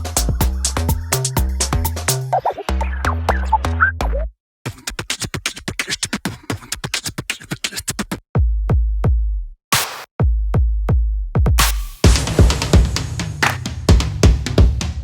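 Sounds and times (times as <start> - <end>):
electronic music with drum-machine beat: 0.0 - 6.1, 11.4 - 14.7.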